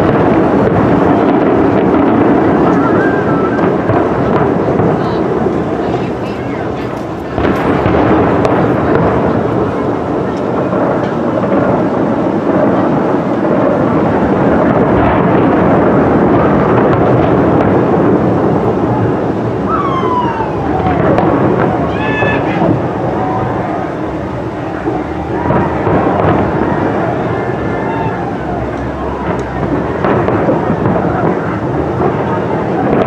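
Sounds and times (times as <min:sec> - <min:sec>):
fireworks bursts rumbling: 0:00.0 - 0:33.0
falling firework whistle: 0:01.2 - 0:04.1, 0:19.6 - 0:24.0, 0:24.6 - 0:31.6.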